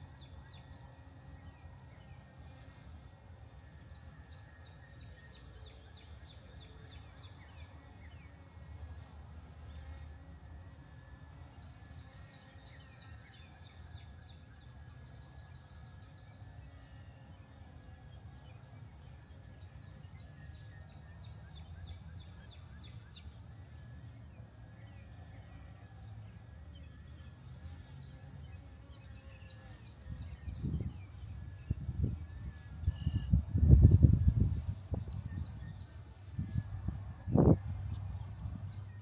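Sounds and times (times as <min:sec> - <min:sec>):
birds chirping: 0:11.1 - 0:39.0.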